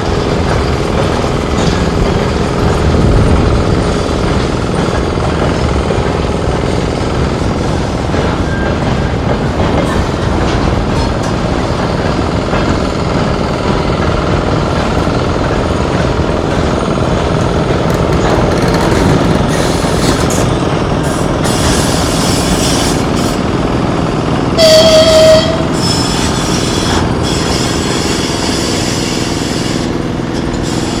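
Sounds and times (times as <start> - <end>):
diesel locomotive engine rumbling: 0.0 - 31.0
locomotive horn blast: 24.6 - 29.8.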